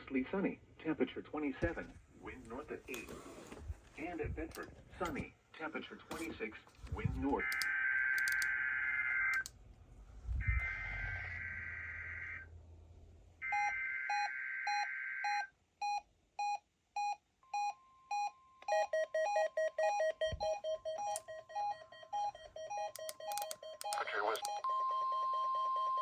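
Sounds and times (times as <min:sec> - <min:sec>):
electronic alert beeping: 0:18.7 - 0:26.0.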